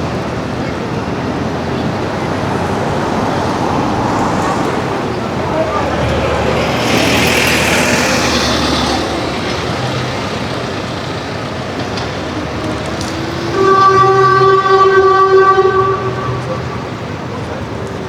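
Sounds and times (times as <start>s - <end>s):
city traffic noise: 0.0s - 18.0s
vehicle horn blast: 13.0s - 17.1s.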